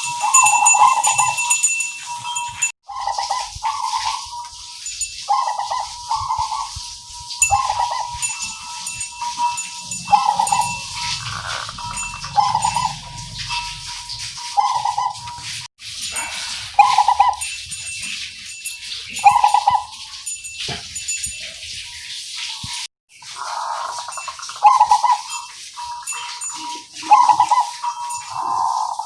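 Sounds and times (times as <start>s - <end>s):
dove cooing: 0.0s - 1.4s, 2.9s - 4.4s, 5.3s - 6.8s, 7.5s - 8.3s, 10.0s - 15.3s, 16.2s - 17.5s, 19.2s - 20.0s, 23.4s - 25.3s, 27.0s - 29.0s.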